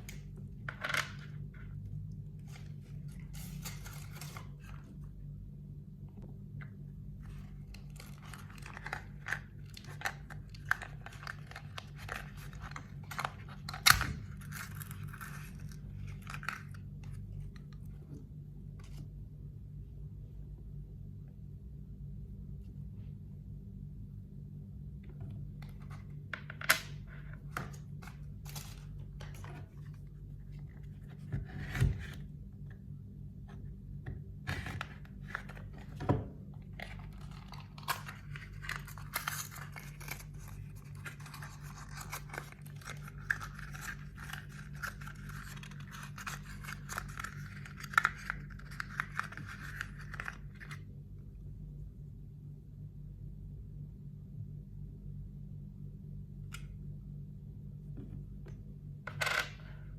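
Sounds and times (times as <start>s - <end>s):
packaging rustling and scraping: 2.4s - 5.0s, 7.2s - 17.7s, 27.0s - 32.3s, 34.5s - 50.8s.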